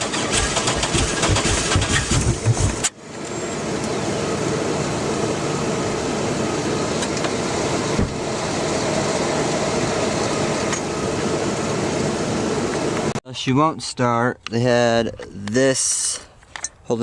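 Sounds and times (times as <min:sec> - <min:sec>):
engine starter cranking: 0:00.0 - 0:02.9.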